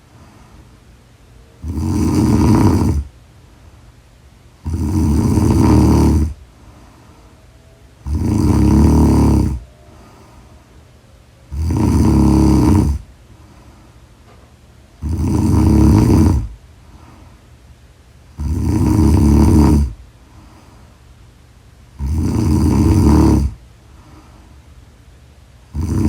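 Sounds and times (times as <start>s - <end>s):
quiet breathing: 0.0s - 26.0s
person snoring loudly: 1.6s - 3.1s, 4.6s - 6.4s, 8.0s - 10.4s, 11.5s - 13.1s, 15.0s - 16.6s, 18.3s - 20.0s, 21.9s - 23.6s, 25.7s - 26.0s.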